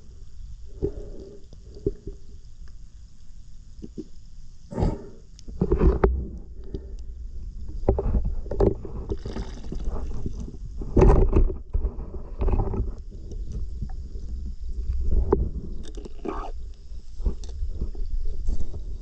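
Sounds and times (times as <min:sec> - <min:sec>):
wind rumble on microphone: 0:05.5 - 0:19.0.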